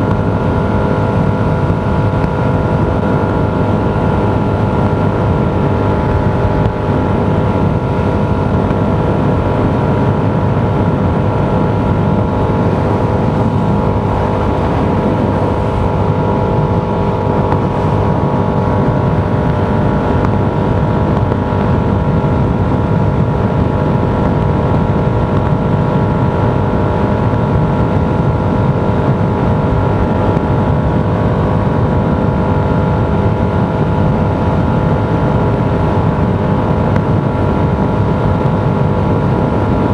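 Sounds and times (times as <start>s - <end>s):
vehicle road noise: 0.0s - 27.3s.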